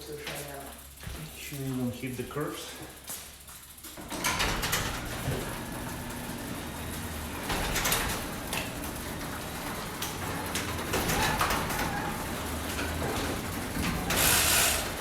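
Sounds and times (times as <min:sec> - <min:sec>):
bicycle tyres rolling: 0:03.4 - 0:15.0.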